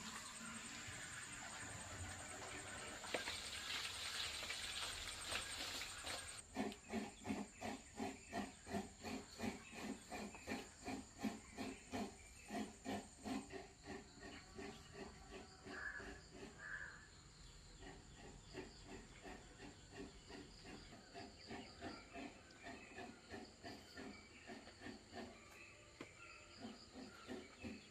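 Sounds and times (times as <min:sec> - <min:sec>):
high insect drone: 0:00.0 - 0:06.4.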